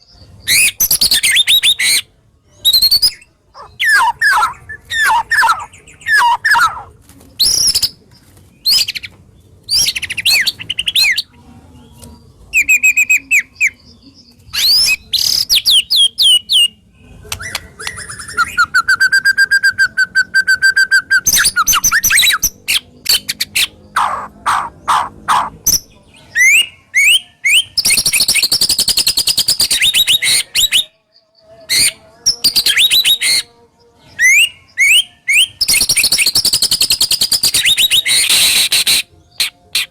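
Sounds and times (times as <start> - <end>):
bird singing whistled phrases: 2.6 - 6.8, 12.6 - 13.8, 14.5 - 16.7, 25.7 - 30.9, 31.7 - 33.5, 34.2 - 39.9.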